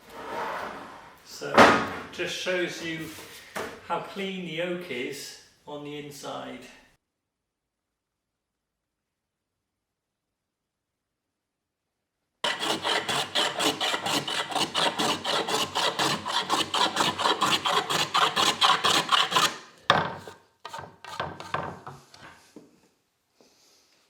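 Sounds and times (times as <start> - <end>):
hand tool strokes on wood: 12.4 - 22.3.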